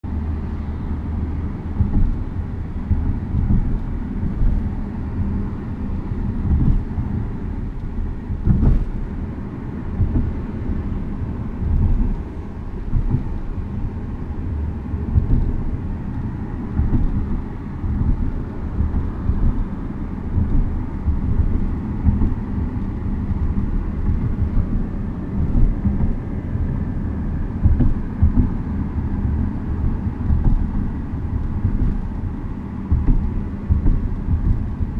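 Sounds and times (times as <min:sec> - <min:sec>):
car cabin road rumble: 0:00.0 - 0:34.9.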